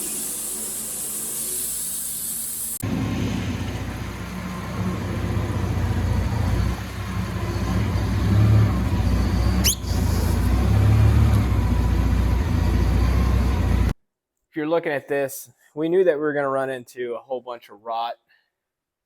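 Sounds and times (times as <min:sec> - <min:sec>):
sharp rising squeal: 0:00.0 - 0:13.9
large engine running: 0:02.8 - 0:13.9.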